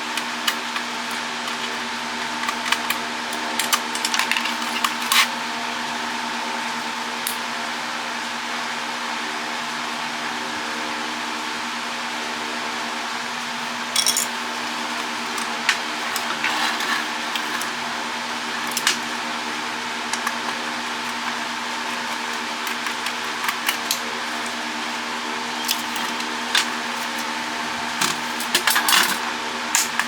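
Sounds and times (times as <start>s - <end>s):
steady machine hum: 0.0s - 30.0s
plastic and metal parts clattering: 14.0s - 14.4s.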